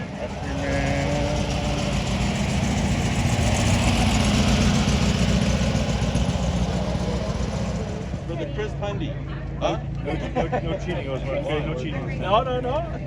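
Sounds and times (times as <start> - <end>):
car engine idling: 0.0 - 9.0.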